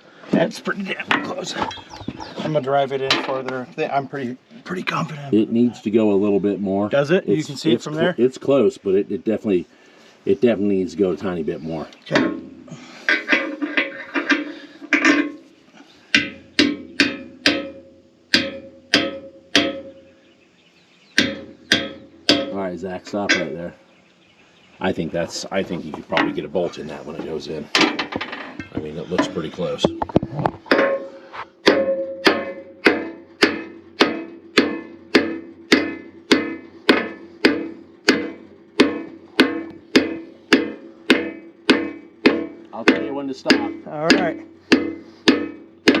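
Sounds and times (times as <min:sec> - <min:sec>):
hammer striking steel: 0:16.1 - 0:20.0, 0:21.2 - 0:22.7, 0:30.7 - 0:46.0.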